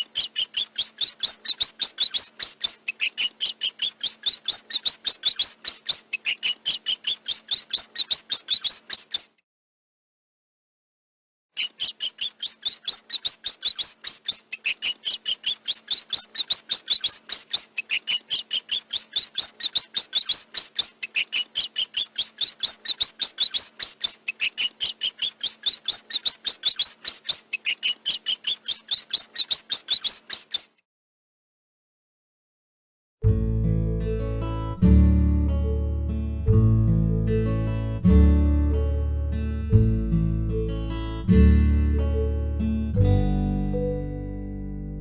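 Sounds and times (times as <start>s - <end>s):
rat squeaking: 0.0s - 9.4s, 11.6s - 30.8s.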